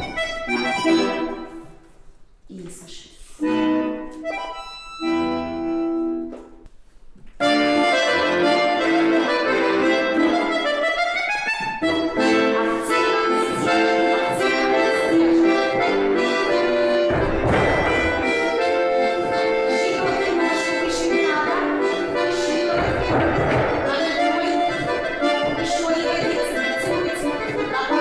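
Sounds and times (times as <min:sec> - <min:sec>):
accordion playing: 0:00.0 - 0:01.9, 0:03.3 - 0:06.6, 0:07.4 - 0:28.0
dull thump: 0:16.8 - 0:27.8.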